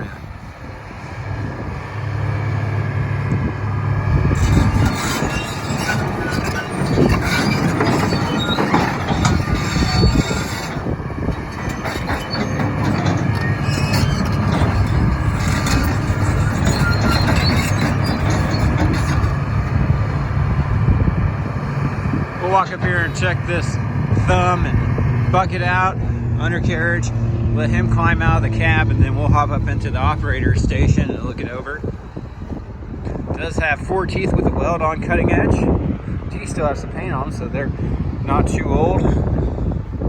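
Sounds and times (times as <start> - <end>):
diesel engine running under load: 0.0 - 40.0
high squeals of steel parts: 4.2 - 19.4
metallic clanks: 4.3 - 19.4.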